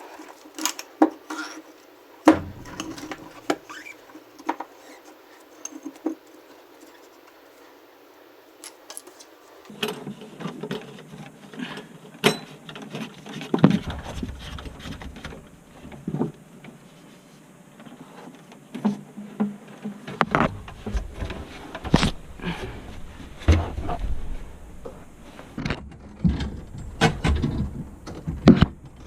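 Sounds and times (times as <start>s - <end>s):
tools and metal parts clinking: 0.0s - 7.6s, 8.6s - 9.7s.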